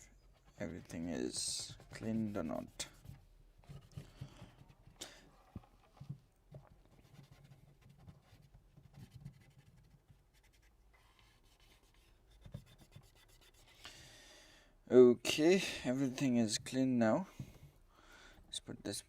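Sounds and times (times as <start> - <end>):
scratching on phone parts: 0.0 - 13.8.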